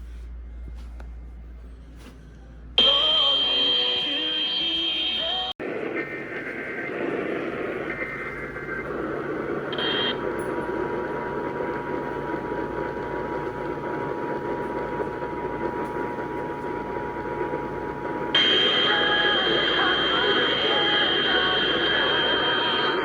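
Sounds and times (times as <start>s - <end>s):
radio static hiss: 2.8s - 23.0s
faint steady tone: 6.6s - 12.0s, 18.1s - 23.0s.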